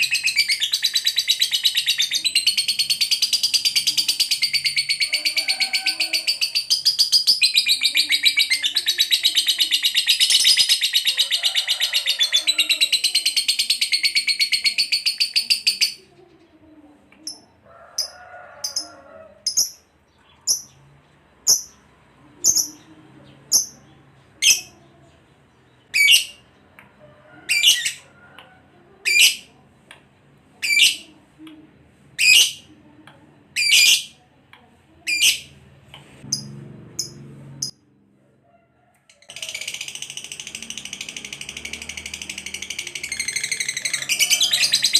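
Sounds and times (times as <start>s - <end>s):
lovebird chattering trill: 0.0s - 16.1s, 17.2s - 20.8s, 21.4s - 21.8s, 22.4s - 22.9s, 24.4s - 24.8s, 25.9s - 26.4s, 29.0s - 29.5s, 33.6s - 34.2s, 36.3s - 37.7s, 39.3s - 44.9s.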